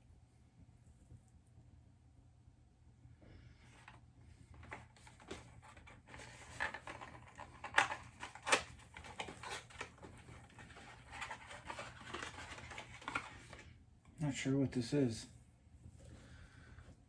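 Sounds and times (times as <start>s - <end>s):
packaging clicks and rustles: 3.8s - 13.7s.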